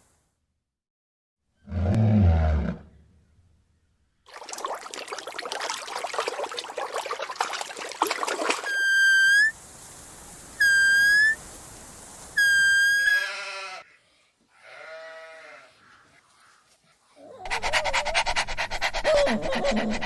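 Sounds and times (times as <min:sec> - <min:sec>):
high whistle-like notes: 0:10.6 - 0:11.4, 0:12.4 - 0:13.2.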